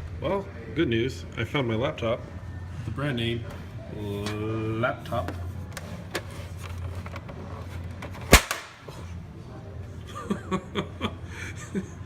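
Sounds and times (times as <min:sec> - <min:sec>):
low steady hum: 0:00.0 - 0:12.0
sharp bang: 0:08.3 - 0:08.9.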